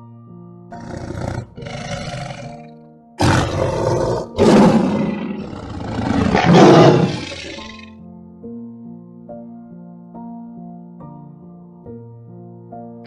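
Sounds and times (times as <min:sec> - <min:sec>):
faint background music: 0:00.0 - 0:13.0
big cat roaring: 0:00.7 - 0:07.8.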